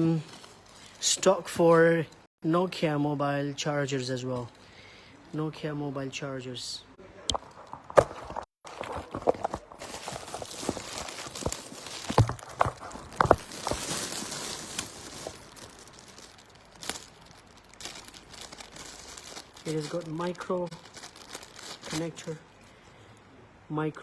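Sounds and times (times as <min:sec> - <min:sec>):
packaging rustling and crinkling: 0:00.0 - 0:02.2, 0:07.3 - 0:22.7.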